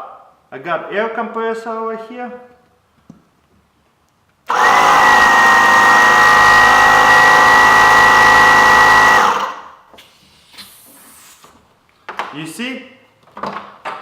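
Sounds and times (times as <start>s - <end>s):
air compressor running: 4.5s - 9.8s.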